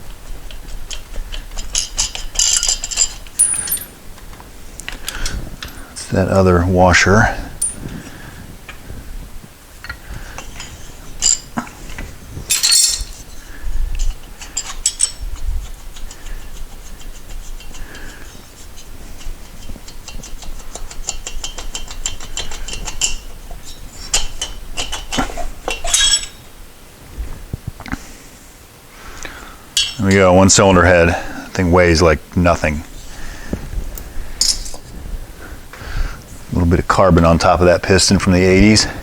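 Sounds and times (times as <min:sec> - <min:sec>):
metal tools clinking and knocking: 0:01.5 - 0:04.0, 0:07.2 - 0:07.9, 0:09.8 - 0:11.5, 0:12.5 - 0:13.3, 0:14.0 - 0:15.3, 0:21.2 - 0:26.5, 0:29.8 - 0:30.3, 0:33.9 - 0:34.8
loud metal clanks: 0:12.5 - 0:13.2, 0:29.8 - 0:30.2.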